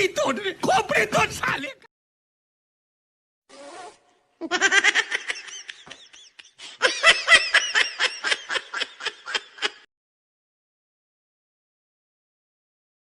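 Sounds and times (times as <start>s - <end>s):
person laughing: 4.4s - 9.9s.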